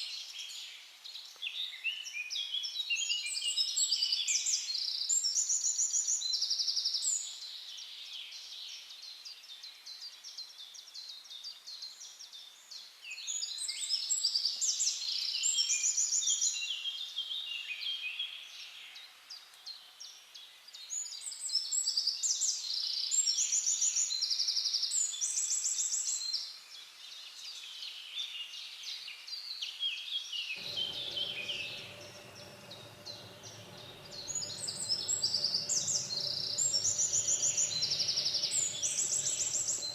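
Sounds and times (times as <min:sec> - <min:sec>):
low steady hum: 0:30.6 - 0:39.9
songbirds singing: 0:30.6 - 0:39.9.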